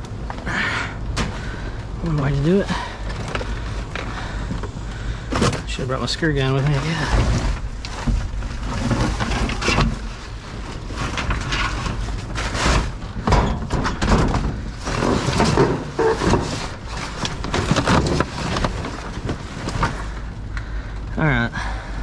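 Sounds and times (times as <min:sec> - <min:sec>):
scrap metal clattering and scraping: 0:01.2 - 0:20.3.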